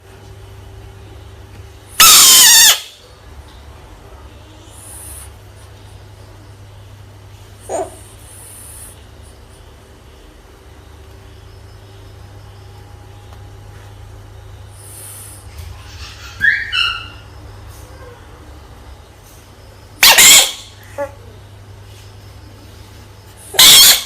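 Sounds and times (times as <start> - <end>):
steady low hum: 0.0 - 24.0
frog calling: 2.0 - 3.0, 20.0 - 21.3, 23.4 - 24.0.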